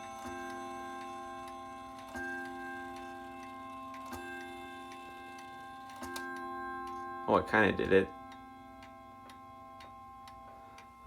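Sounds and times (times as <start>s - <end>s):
clock hammer striking chime rod: 0.0s - 11.0s
clock ticking: 0.0s - 11.0s.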